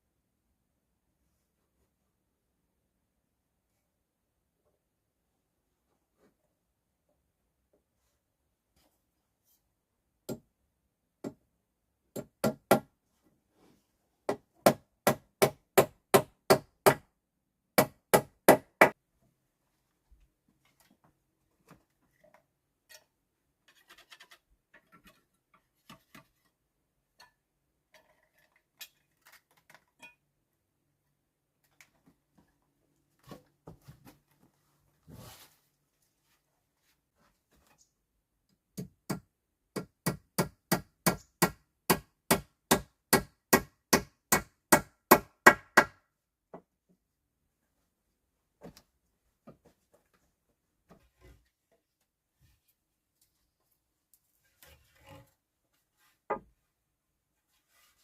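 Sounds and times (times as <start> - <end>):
tool striking wood: 12.1 - 12.9, 14.3 - 17.1, 17.8 - 19.0.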